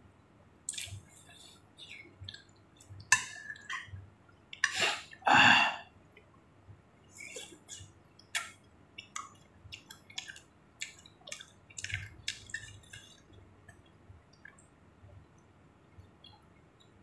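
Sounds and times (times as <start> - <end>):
wet chewing and mouth smacking: 0.7 - 3.9, 7.2 - 14.7.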